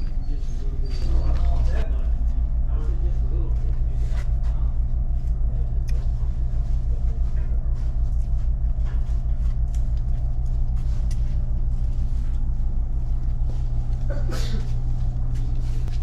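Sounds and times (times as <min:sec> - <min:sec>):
motor running with low rumble: 0:00.0 - 0:16.0.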